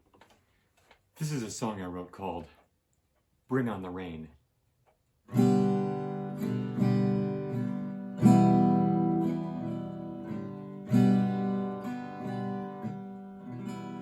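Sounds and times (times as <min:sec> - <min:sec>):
acoustic guitar strumming chords: 0:05.3 - 0:14.0.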